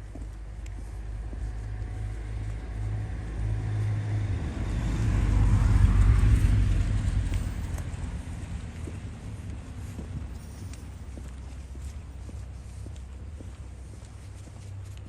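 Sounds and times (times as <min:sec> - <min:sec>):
vehicle passing by: 0:01.2 - 0:10.3.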